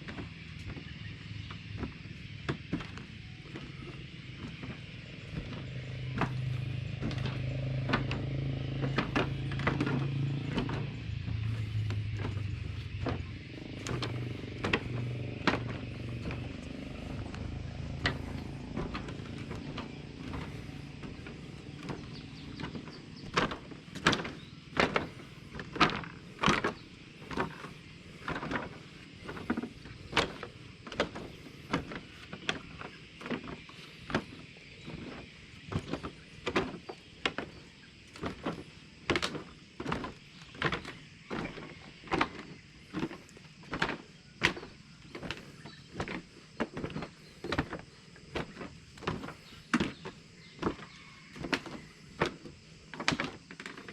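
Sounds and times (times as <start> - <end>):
bicycle tyres rolling hiss: 3.6 - 23.2, 41.9 - 51.0.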